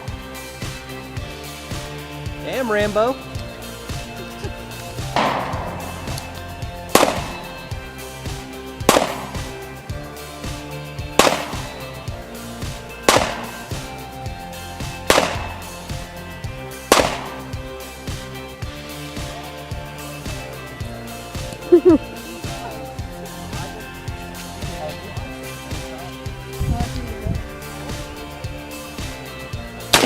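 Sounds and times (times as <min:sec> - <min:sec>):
background music: 0:00.0 - 0:30.0
rifle shots echoing: 0:05.1 - 0:07.7, 0:08.9 - 0:09.7, 0:11.2 - 0:11.9, 0:13.0 - 0:13.8, 0:15.1 - 0:15.9, 0:16.9 - 0:17.5.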